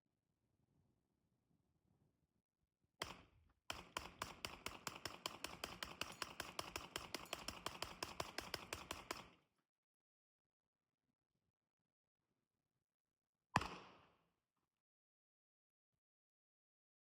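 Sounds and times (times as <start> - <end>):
faint rapid gunfire: 3.0 - 9.4.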